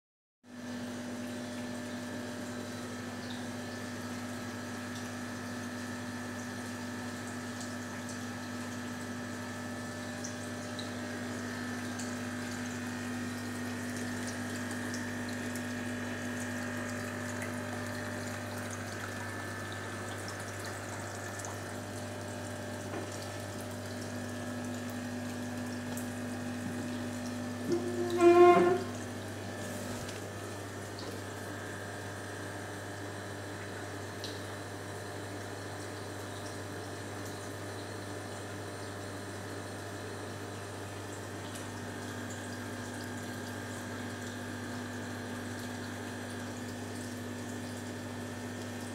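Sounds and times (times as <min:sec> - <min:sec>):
aquarium filter pump humming: 0:00.5 - 0:48.9
moving water: 0:13.5 - 0:31.7.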